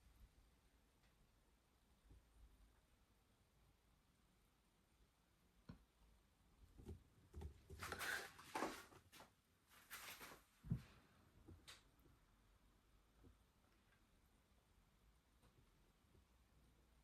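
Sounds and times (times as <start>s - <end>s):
soft rustling and scraping: 7.4s - 11.1s.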